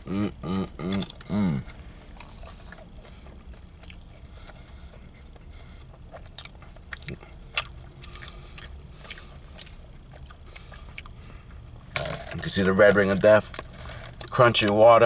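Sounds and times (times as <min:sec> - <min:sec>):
person chewing crunchy sandwich: 0:00.0 - 0:14.4.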